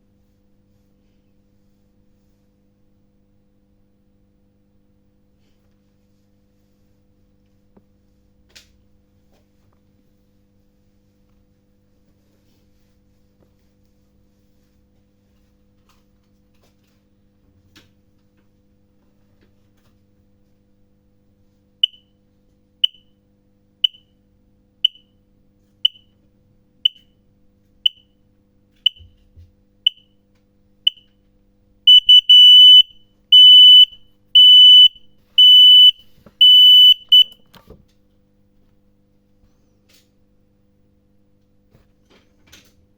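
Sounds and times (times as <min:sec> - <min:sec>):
alarm beeping: 0:31.9 - 0:37.4
alarm click: 0:31.9 - 0:37.4.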